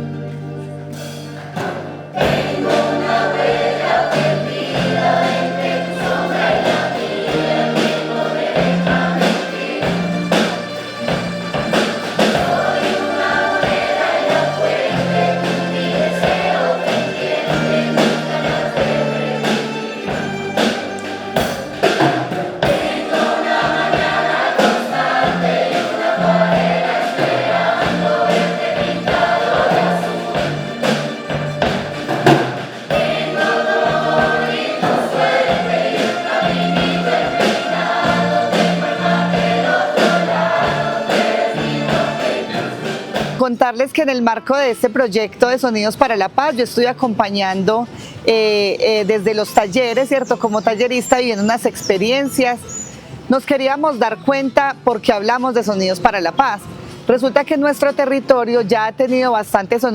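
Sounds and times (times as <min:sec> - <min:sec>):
held bass notes: 0:00.0 - 0:43.5
drum strikes: 0:01.1 - 0:43.5
choir singing: 0:01.5 - 0:43.4.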